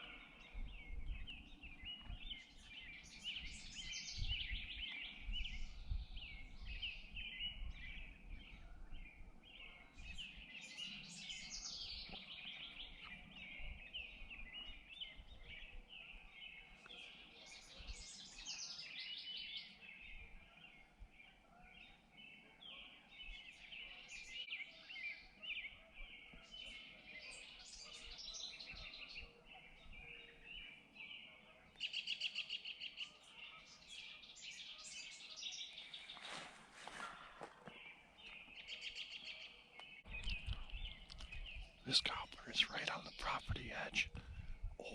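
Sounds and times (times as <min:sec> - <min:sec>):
songbirds chirping and singing: 0:00.0 - 0:44.9.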